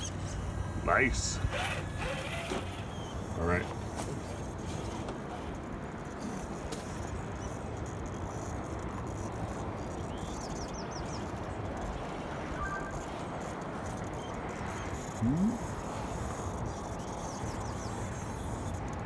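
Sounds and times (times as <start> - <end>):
outdoor background noise: 0.0 - 19.0
faint bird chirps: 9.1 - 18.8.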